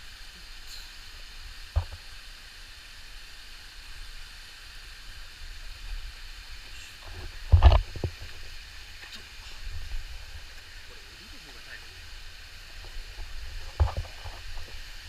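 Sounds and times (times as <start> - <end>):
stream rushing over rock: 0.0 - 15.0.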